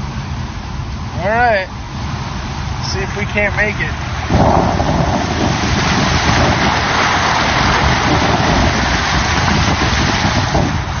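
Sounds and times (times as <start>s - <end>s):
vehicle low rumble: 0.0s - 11.0s
water splashing against vehicle: 2.8s - 11.0s.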